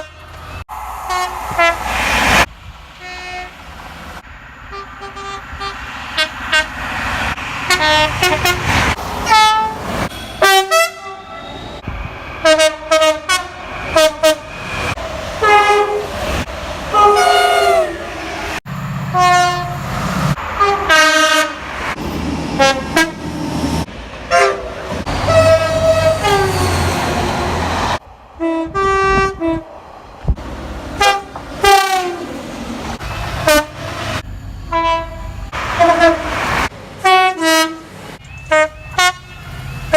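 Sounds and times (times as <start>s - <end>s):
low train rumble: 0.0s - 39.9s
train horn blasts: 1.0s - 1.9s, 4.7s - 6.7s, 7.7s - 8.7s, 9.3s - 11.6s, 12.4s - 14.6s, 15.4s - 16.1s, 16.9s - 18.0s, 19.1s - 19.8s, 20.6s - 21.6s, 22.6s - 23.2s, 24.3s - 26.7s, 28.4s - 29.6s, 31.0s - 32.3s, 33.4s - 33.9s, 34.7s - 36.3s, 37.0s - 37.9s, 38.5s - 39.6s.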